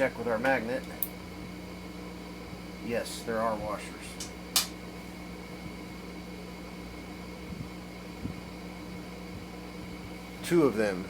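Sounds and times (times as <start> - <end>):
steady machine hum: 0.0 - 11.0
sharp click: 4.2 - 4.8.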